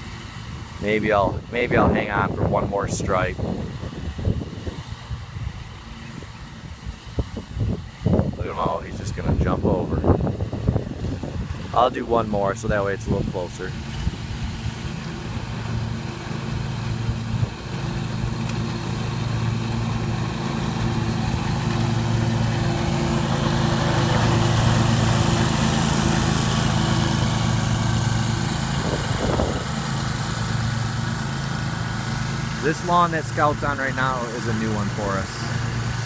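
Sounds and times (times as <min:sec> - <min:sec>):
mower engine running: 0:00.0 - 0:36.0.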